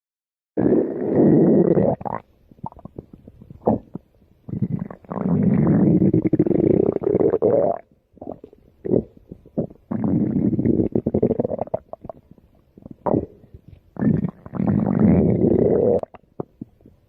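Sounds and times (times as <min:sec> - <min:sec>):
stomach growling: 0:00.6 - 0:17.0.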